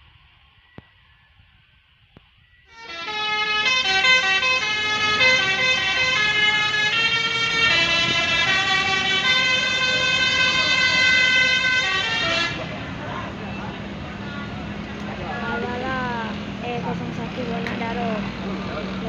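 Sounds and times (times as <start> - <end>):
musical bus air horn melody: 2.7 - 12.7.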